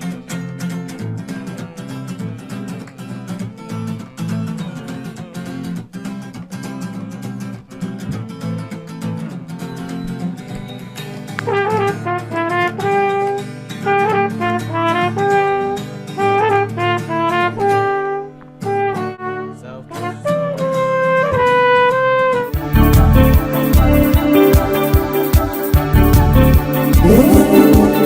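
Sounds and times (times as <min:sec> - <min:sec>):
live band rhythm accompaniment: 0:22.5 - 0:28.0
melody of held notes: 0:22.6 - 0:28.0.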